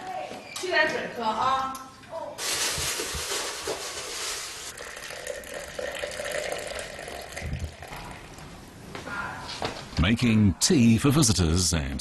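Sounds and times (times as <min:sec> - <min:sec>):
water pouring into a vessel: 0:04.6 - 0:08.4.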